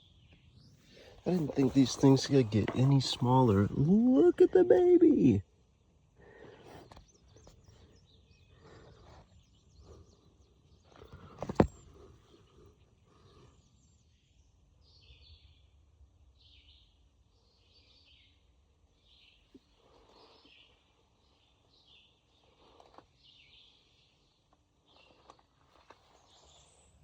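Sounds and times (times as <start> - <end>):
soft rustles: 1.0 - 3.8.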